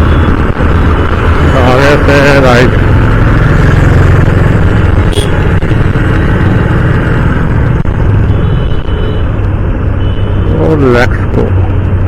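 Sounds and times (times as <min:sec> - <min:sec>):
motorcycle engine running: 0:00.0 - 0:09.1.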